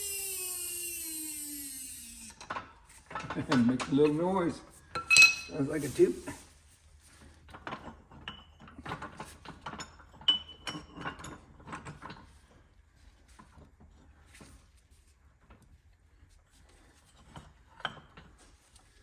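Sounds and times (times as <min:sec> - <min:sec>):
steel parts clinking and knocking: 0:05.0 - 0:05.6
metallic rings: 0:05.0 - 0:05.8.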